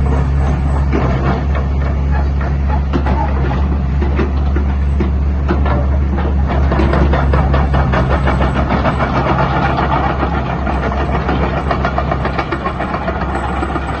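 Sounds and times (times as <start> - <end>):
diesel engine running: 0.0 - 14.0
fast mechanical clatter: 6.3 - 14.0.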